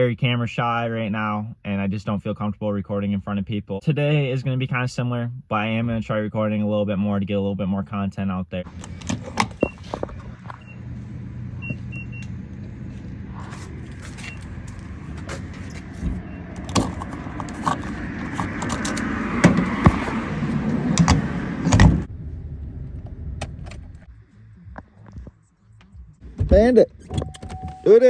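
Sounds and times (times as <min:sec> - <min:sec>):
vehicle interior hum: 0:08.6 - 0:28.0
clicks and rattles: 0:16.6 - 0:19.8.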